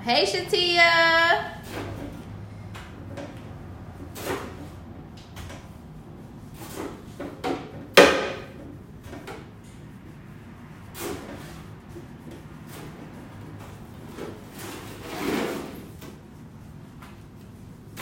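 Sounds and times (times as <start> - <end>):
objects knocking and scraping: 1.6 - 5.7, 6.5 - 9.8.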